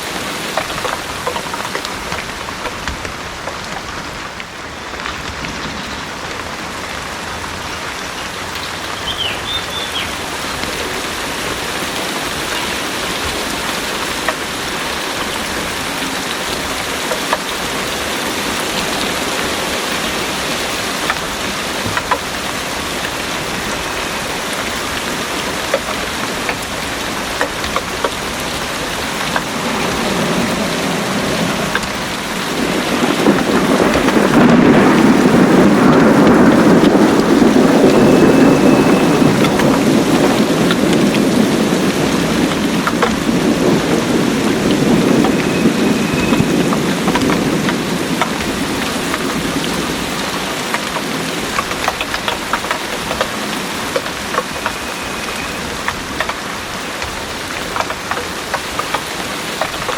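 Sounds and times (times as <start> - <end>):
heavy rain on foliage: 0.0 - 59.9
raindrops landing close by: 0.0 - 59.9
low thunder rumble: 17.6 - 57.5.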